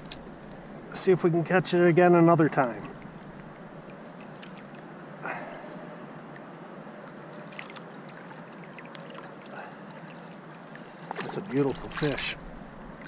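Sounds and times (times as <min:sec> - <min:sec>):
river water running: 0:00.0 - 0:13.0
small water splashes: 0:02.8 - 0:04.8, 0:07.1 - 0:13.0.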